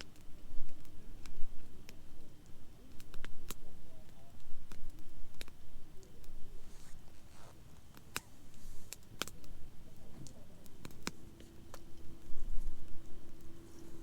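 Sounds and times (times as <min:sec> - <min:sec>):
campfire crackling and popping: 0:00.0 - 0:14.0
faint steady tone: 0:05.6 - 0:14.0.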